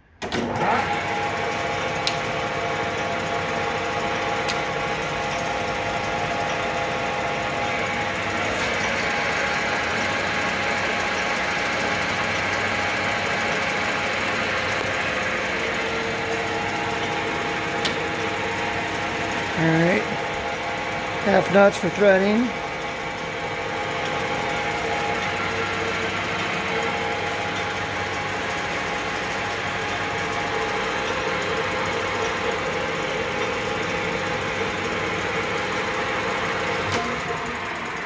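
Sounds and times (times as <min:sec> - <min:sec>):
lathe running with mechanical hum: 0:00.2 - 0:38.0.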